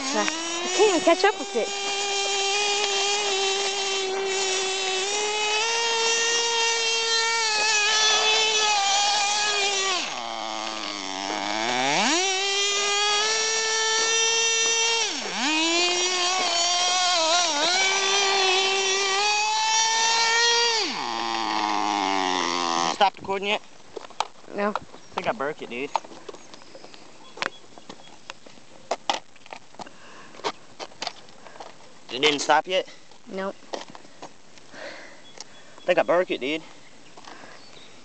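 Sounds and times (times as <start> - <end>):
small two-stroke engine revving: 0.0 - 23.5.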